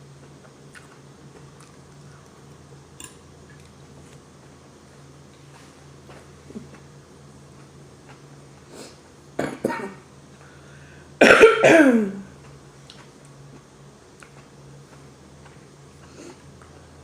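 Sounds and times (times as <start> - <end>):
woman coughing: 9.4 - 10.0, 11.2 - 12.3.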